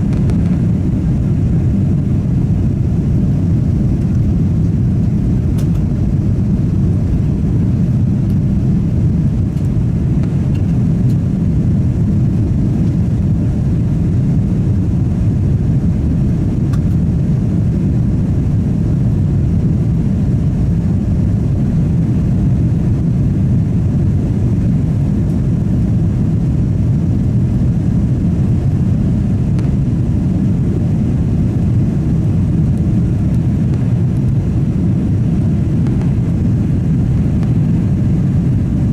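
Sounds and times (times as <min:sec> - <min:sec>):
airplane cabin engine rumble: 0:00.0 - 0:38.9.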